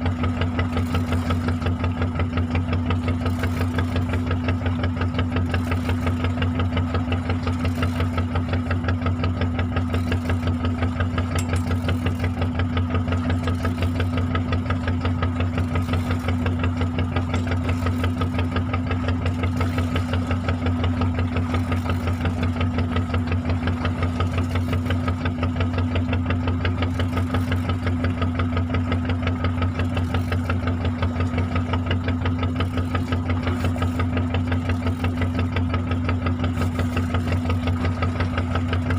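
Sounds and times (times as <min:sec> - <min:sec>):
boat engine running steadily: 0:00.0 - 0:38.9.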